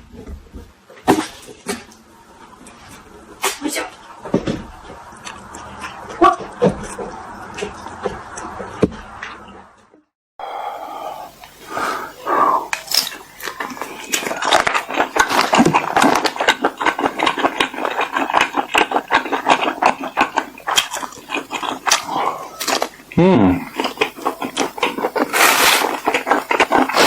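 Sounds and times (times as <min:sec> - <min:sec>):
chewing crunchy food: 0:10.5 - 0:27.0.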